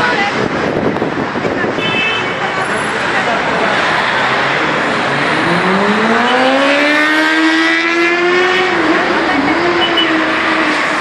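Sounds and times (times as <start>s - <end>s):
street traffic noise: 0.0s - 11.0s
vehicle engine accelerating: 3.3s - 11.0s.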